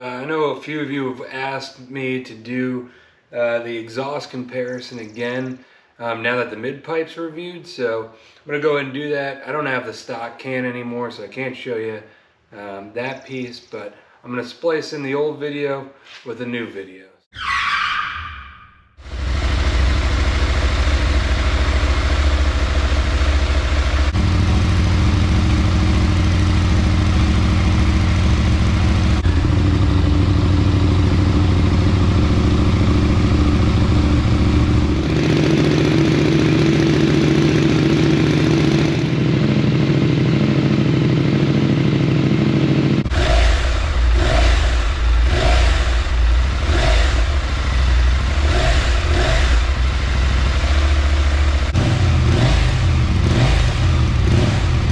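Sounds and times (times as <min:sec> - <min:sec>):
motorcycle engine running: 0:19.0 - 0:54.9.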